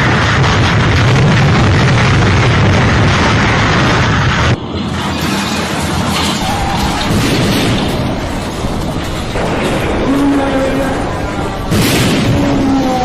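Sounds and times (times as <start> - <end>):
wind buffeting microphone: 0.0 - 4.8.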